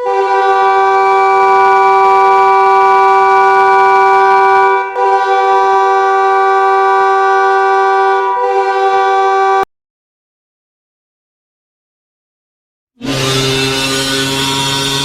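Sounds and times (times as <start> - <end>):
goal horn blasts: 0.0 - 9.7, 13.0 - 15.0.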